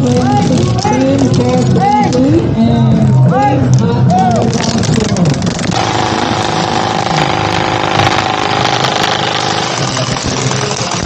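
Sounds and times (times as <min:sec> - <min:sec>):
vehicle engine running: 0:05.4 - 0:11.0
steady whine: 0:05.6 - 0:10.9.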